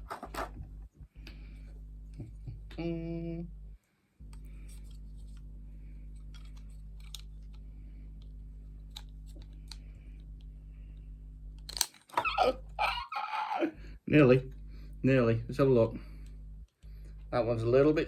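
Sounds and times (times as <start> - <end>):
steady low hum: 0.0 - 18.0
plastic parts clicking together: 6.2 - 10.4, 11.6 - 12.4.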